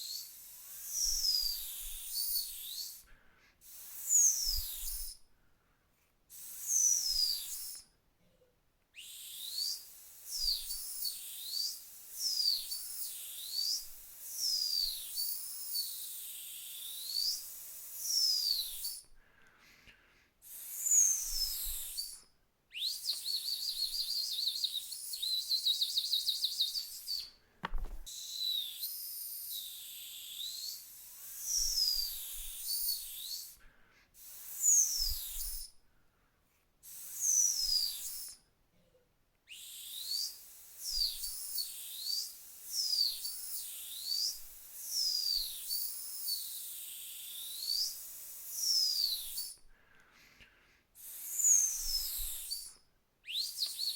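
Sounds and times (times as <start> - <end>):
whistle trill: 0.0 - 3.0, 9.0 - 19.1, 20.5 - 27.4, 28.1 - 33.6, 34.4 - 35.7, 37.0 - 38.4, 39.5 - 49.6, 51.0 - 53.9
dog whistle blasts: 0.4 - 3.0, 6.4 - 7.8, 9.0 - 19.0, 20.5 - 27.3, 28.1 - 33.6, 34.2 - 35.7, 36.9 - 38.4, 39.5 - 49.6, 51.0 - 53.9.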